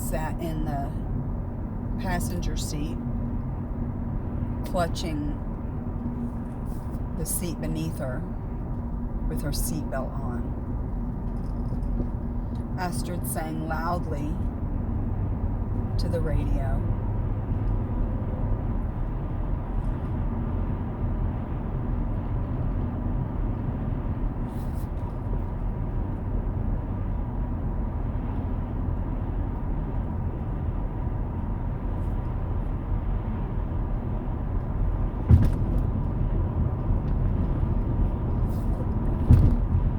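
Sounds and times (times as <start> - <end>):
car driving rumble: 0.0 - 39.9.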